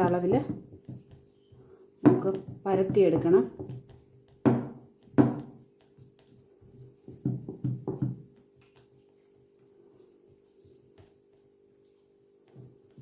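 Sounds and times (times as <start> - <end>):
soft thuds of dough: 0.0 - 8.9
sharp knocks on metal pan: 4.4 - 5.5.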